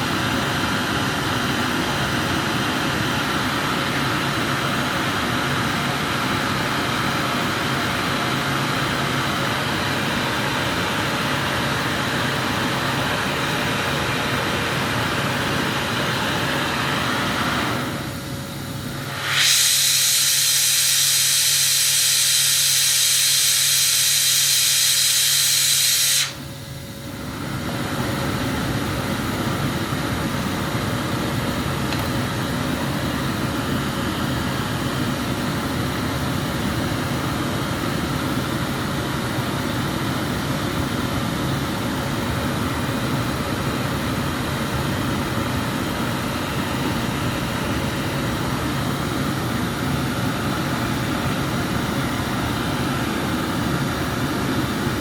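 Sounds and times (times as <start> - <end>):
gas burner flame rushing: 0.0 - 26.6, 45.0 - 55.0
loud high-pitched hiss: 19.0 - 26.4.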